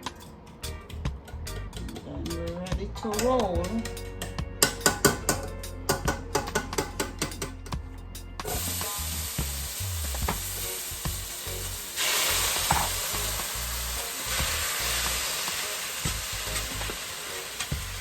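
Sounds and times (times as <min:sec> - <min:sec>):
food sizzling in frying pan: 0:08.5 - 0:18.0.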